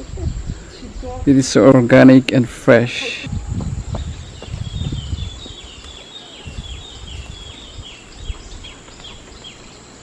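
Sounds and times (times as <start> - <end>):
high insect drone: 0.0 - 10.0
low rumbles on microphone: 3.2 - 9.0.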